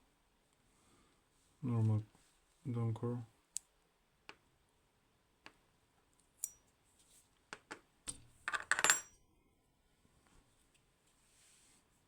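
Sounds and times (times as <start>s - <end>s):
metal lock parts clinking: 8.5s - 9.2s.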